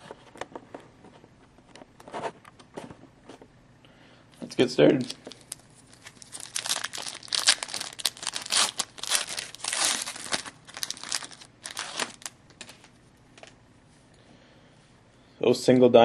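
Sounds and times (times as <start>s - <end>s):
wrapper being torn and crinkled: 5.0s - 13.5s.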